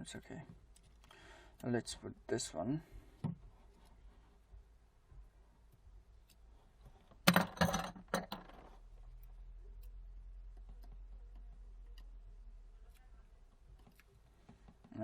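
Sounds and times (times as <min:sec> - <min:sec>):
faint low hum: 0:00.0 - 0:15.0
small phone parts clattering: 0:06.9 - 0:09.4.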